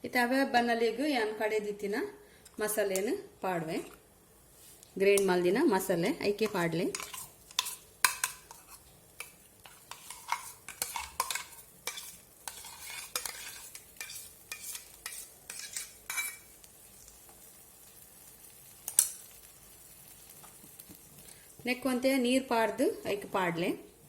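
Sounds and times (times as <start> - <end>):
spoon scraping a pan: 6.4 - 16.6
paste sizzling in oil: 6.4 - 21.7.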